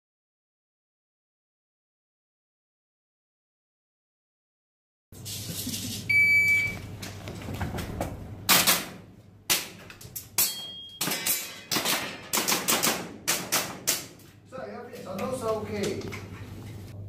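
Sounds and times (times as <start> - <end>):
airsoft gun shots: 8.5 - 9.8.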